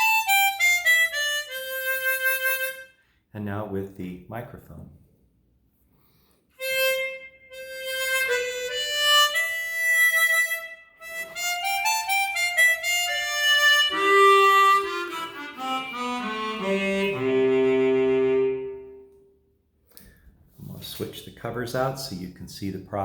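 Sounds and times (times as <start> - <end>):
chromatic harmonica melody: 0.0 - 3.3, 6.2 - 19.4.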